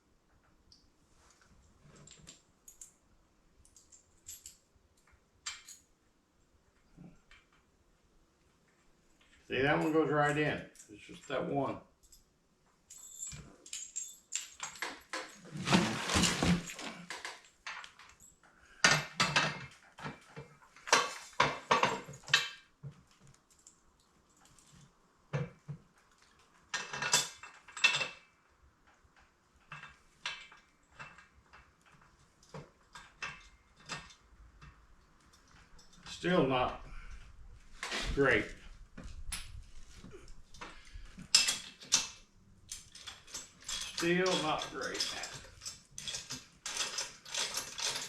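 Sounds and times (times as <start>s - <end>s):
metal tools clinking: 5.4s - 5.9s, 12.9s - 22.6s, 26.7s - 28.2s, 40.0s - 48.0s.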